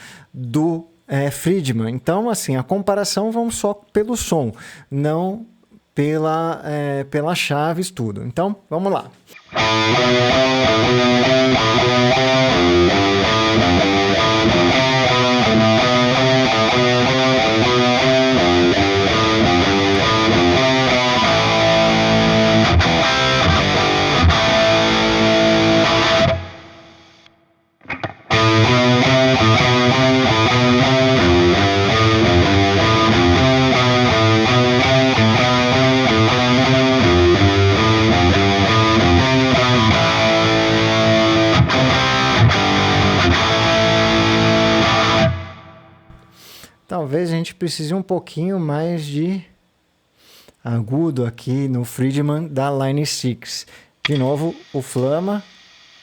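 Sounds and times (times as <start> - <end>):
distorted electric guitar riff: 9.3 - 46.5, 54.0 - 56.0.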